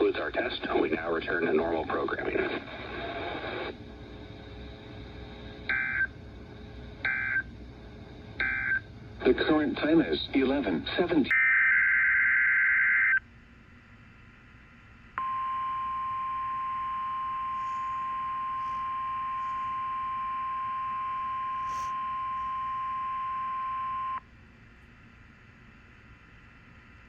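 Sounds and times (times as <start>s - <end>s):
faint radio hiss: 0.0s - 6.8s, 9.2s - 11.3s, 13.4s - 24.1s
steady warning alarm tone: 5.6s - 6.1s, 7.0s - 7.5s, 8.4s - 8.9s, 15.2s - 24.2s
data burst tones: 15.2s - 24.2s.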